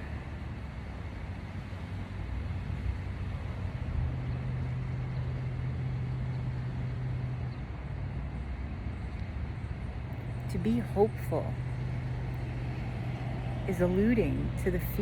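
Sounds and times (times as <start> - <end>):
vehicle engine rumble: 0.0 - 15.0.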